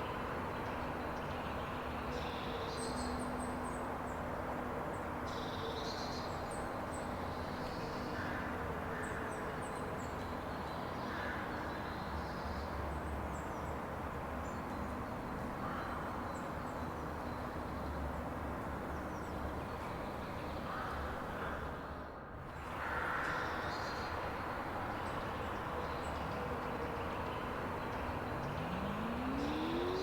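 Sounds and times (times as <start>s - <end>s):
small birds chirping: 27.1s - 30.0s.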